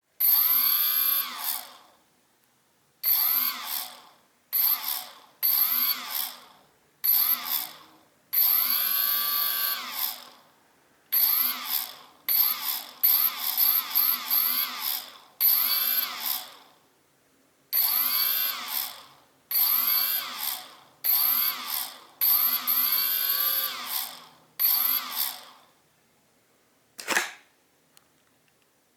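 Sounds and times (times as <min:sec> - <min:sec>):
drone motor spinning up with whine: 0:00.4 - 0:01.7, 0:08.4 - 0:10.4, 0:11.2 - 0:16.6, 0:17.8 - 0:19.0, 0:19.6 - 0:25.6.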